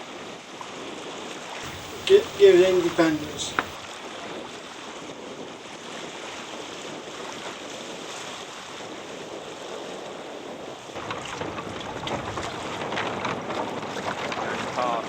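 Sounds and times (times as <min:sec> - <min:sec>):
rushing water: 0:01.6 - 0:03.8
wind buffeting microphone: 0:01.6 - 0:03.8
light knocks: 0:01.7 - 0:03.8.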